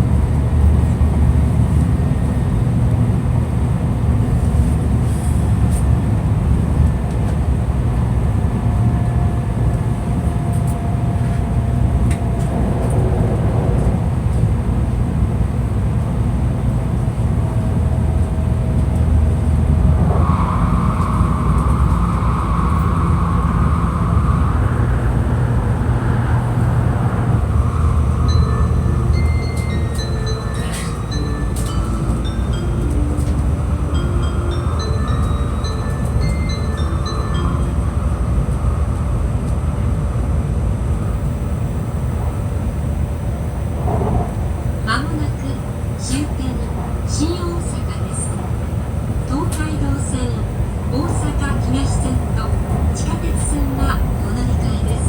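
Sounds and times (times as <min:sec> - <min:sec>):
train rumble inside carriage: 0:00.0 - 0:55.0
high whine: 0:19.8 - 0:39.6.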